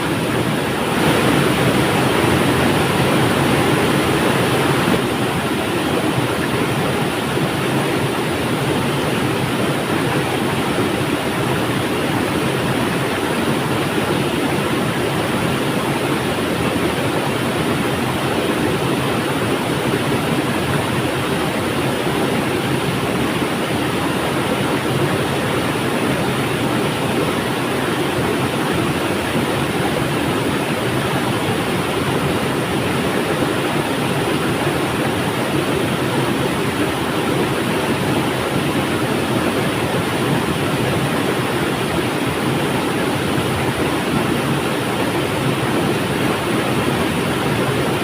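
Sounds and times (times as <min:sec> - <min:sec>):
river water rushing: 0:00.0 - 0:48.0.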